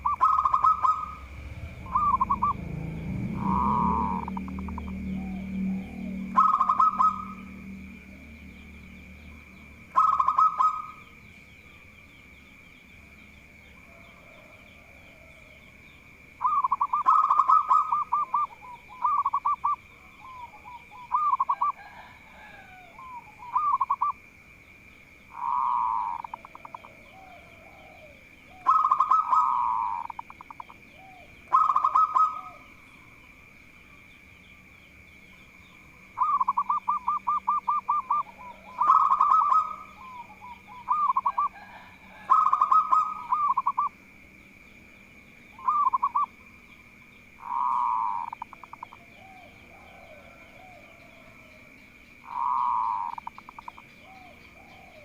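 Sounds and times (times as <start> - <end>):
dove cooing: 0.0 - 8.4, 9.8 - 11.1, 13.8 - 15.6, 16.4 - 24.2, 25.3 - 33.2, 35.6 - 44.0, 45.6 - 46.4, 47.4 - 55.0
faint high-pitched hum: 0.0 - 55.0.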